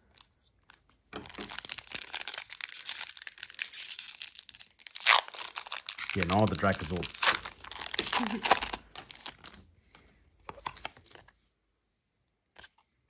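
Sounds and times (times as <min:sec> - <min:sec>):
foil wrapper crinkling and tearing: 0:01.2 - 0:09.6, 0:10.5 - 0:11.2.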